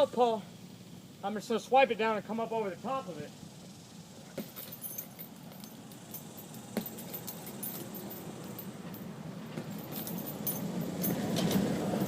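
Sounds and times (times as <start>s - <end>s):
metallic clinking and jingling: 4.3s - 12.0s.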